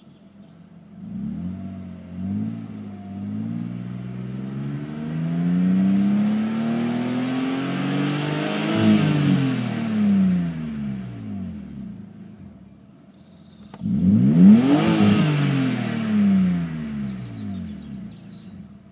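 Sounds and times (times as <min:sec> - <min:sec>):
car engine revving: 0:00.8 - 0:12.7, 0:13.5 - 0:18.9
sharp click: 0:13.6 - 0:13.9.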